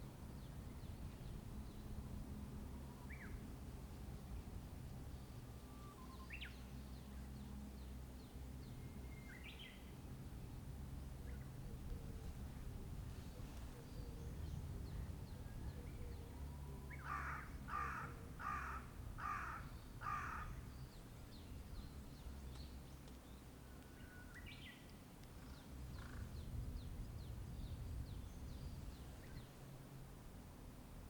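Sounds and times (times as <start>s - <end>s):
crow cawing: 17.0s - 20.6s.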